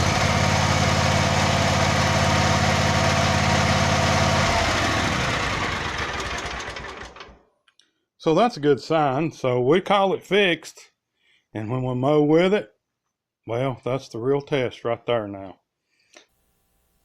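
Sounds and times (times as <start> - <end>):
riding mower engine running: 0.0 - 7.4.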